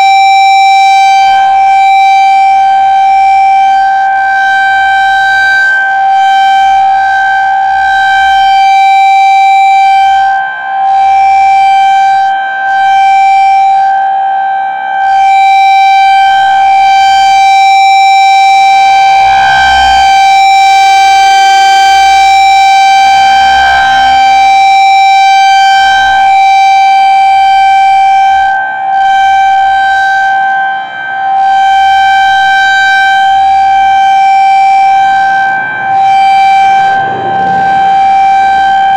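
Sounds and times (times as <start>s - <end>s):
loud high-pitched warning siren: 0.0s - 38.9s.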